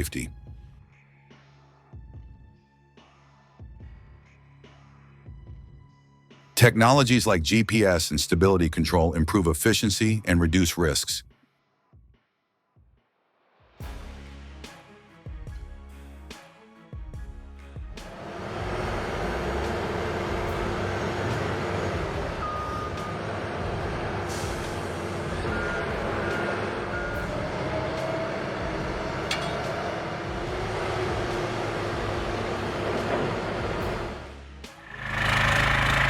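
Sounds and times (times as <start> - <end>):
heavy truck engine running: 18.1 - 36.0.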